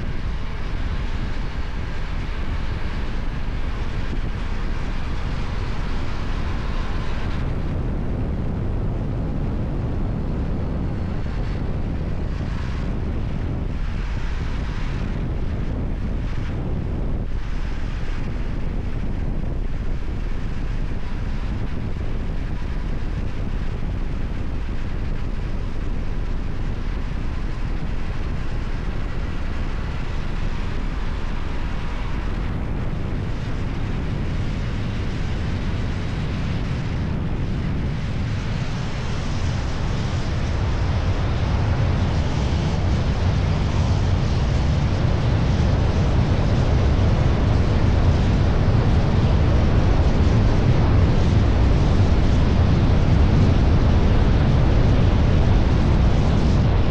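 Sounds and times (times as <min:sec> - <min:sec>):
wind buffeting microphone: 0:00.0 - 0:56.9.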